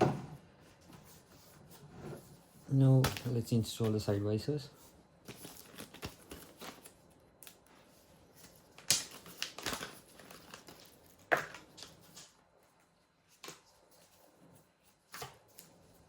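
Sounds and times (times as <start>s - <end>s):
plastic crinkling: 5.2s - 12.4s.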